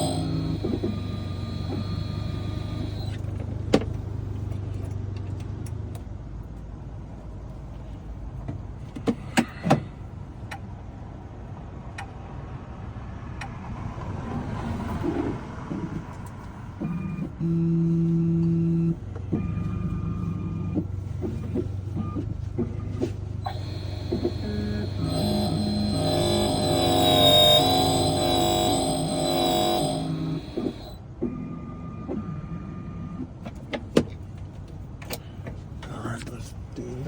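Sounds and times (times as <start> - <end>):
key-cutting machine humming: 0.0 - 3.2, 22.7 - 31.0.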